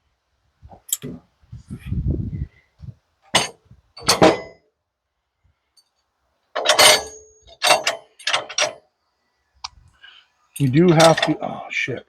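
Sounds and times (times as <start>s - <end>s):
metal clank ringing: 3.4s - 4.6s, 6.6s - 8.8s.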